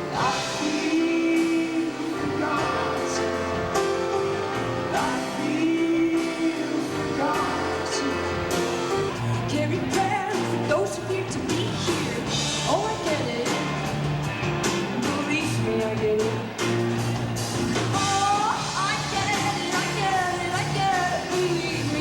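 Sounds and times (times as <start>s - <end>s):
person singing: 0.0s - 13.8s, 14.8s - 16.7s, 17.8s - 22.0s
live band playing: 0.0s - 22.0s.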